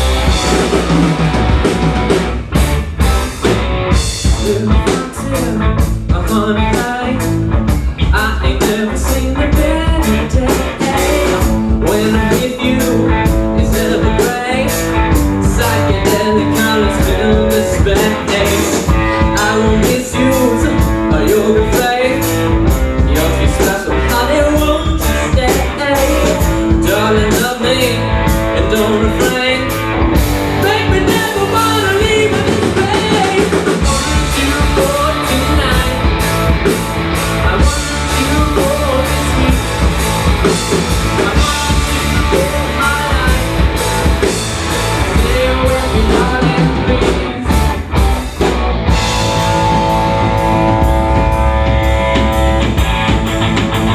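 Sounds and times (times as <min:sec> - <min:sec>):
bass guitar: 0:00.0 - 0:53.9
drum kit: 0:00.0 - 0:53.9
electric guitar: 0:00.0 - 0:53.9
person singing: 0:04.3 - 0:29.9, 0:30.5 - 0:48.0.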